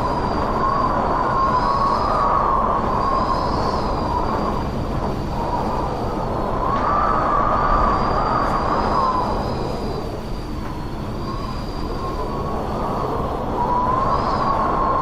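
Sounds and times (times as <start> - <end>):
wind howling: 0.0 - 15.0.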